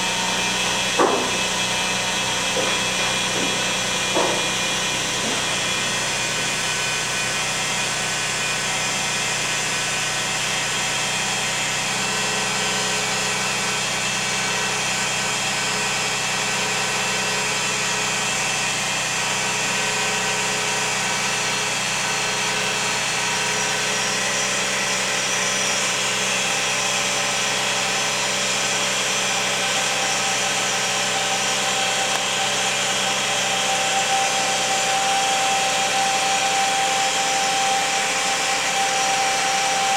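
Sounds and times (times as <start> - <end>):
mechanical hum: 0.0 - 16.2.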